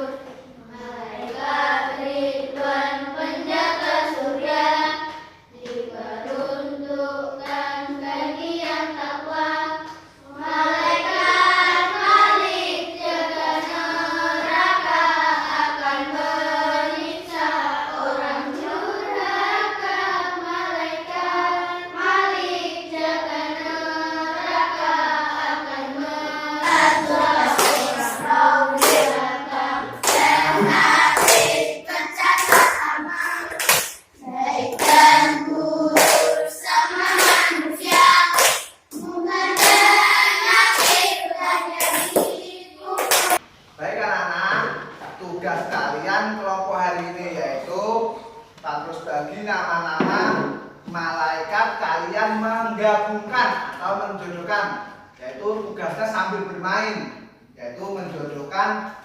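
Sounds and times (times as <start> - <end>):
children singing together: 0.0 - 43.4
hand claps: 27.4 - 28.2, 28.8 - 29.2, 30.0 - 31.7, 32.3 - 34.1, 36.0 - 36.4, 37.1 - 38.8, 40.7 - 41.1, 41.8 - 42.4, 43.0 - 43.4.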